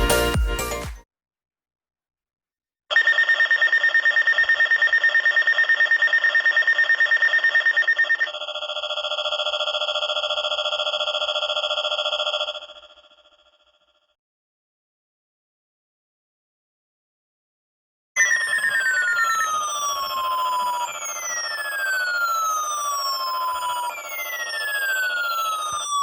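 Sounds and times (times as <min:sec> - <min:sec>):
warbling electronic alert alarm: 0:02.9 - 0:13.8, 0:18.2 - 0:26.0.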